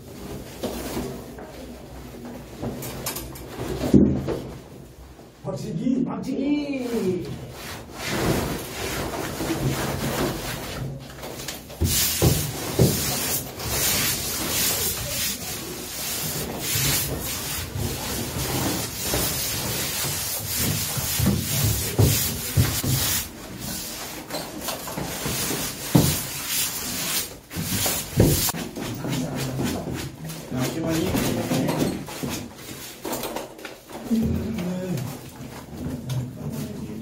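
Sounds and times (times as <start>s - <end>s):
wallpaper rubbing strokes: 6.8s - 33.1s.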